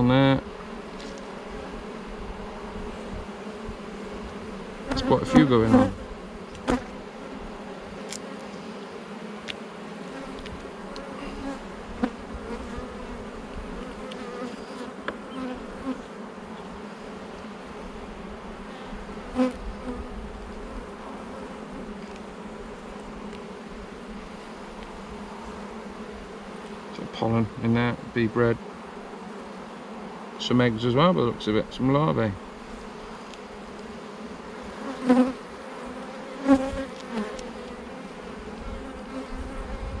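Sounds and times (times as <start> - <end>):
bees buzzing around hive: 0.0 - 40.0
hive frames clicking and knocking: 6.5 - 7.0.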